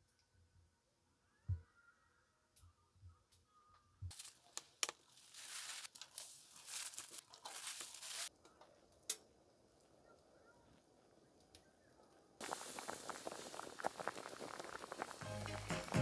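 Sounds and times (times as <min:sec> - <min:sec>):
rustling and crinkling material: 0:04.1 - 0:08.3.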